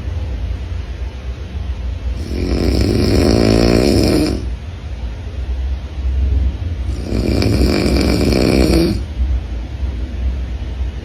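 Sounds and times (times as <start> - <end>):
man snoring: 2.2 - 4.5, 6.9 - 9.1.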